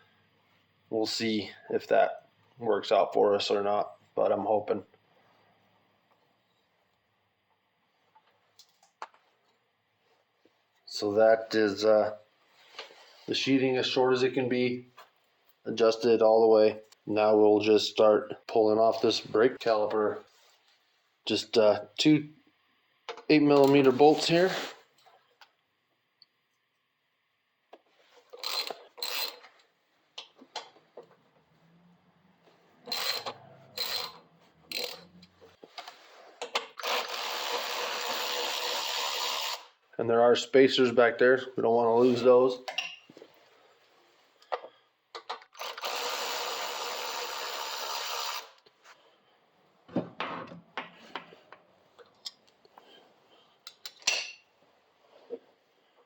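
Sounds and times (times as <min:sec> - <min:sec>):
ratchet wrench clicking: 0:28.4 - 0:29.4, 0:32.9 - 0:35.1.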